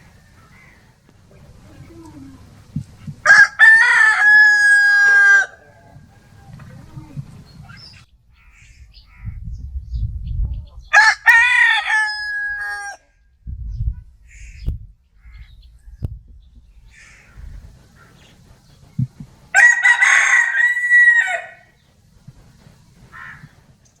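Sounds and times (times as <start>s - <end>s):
rooster crowing: 0.0s - 1.0s, 3.2s - 5.9s, 10.9s - 13.0s, 19.5s - 21.8s
low rumble: 5.6s - 11.0s.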